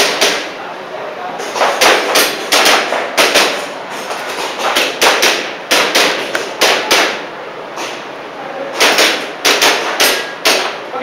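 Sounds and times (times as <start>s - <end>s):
airsoft pistol shots: 1.6s - 3.7s, 4.6s - 7.2s.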